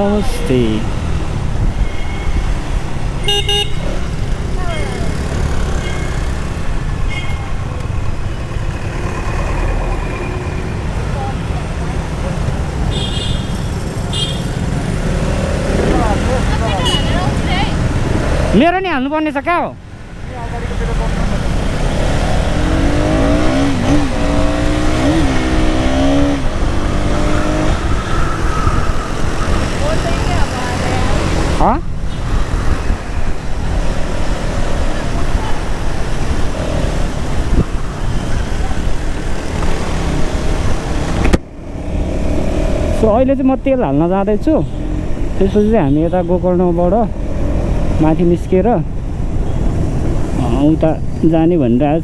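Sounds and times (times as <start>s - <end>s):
vehicle engine rumble: 0.0s - 52.0s
wind noise: 0.8s - 4.4s, 22.0s - 41.4s.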